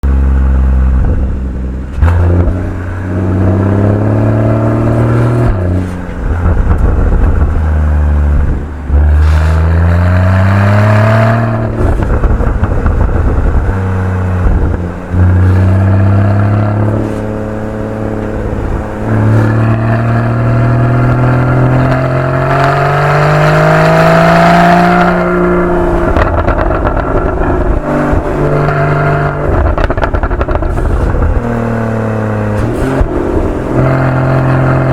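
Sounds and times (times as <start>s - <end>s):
car engine revving: 0.0s - 34.9s
exhaust pops and crackles: 1.0s - 2.8s, 5.3s - 9.8s, 11.5s - 17.4s, 26.0s - 34.8s.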